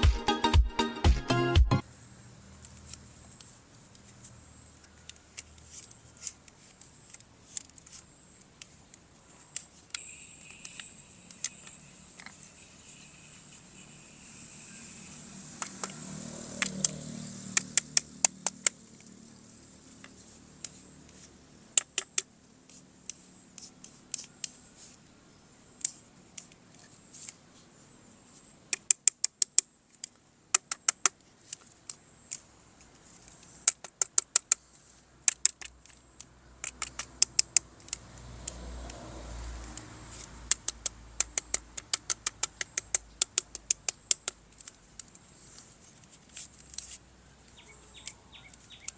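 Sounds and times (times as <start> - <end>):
quick sharp clicks: 21.7 - 24.6, 28.7 - 32.5, 33.2 - 39.0, 39.7 - 45.2.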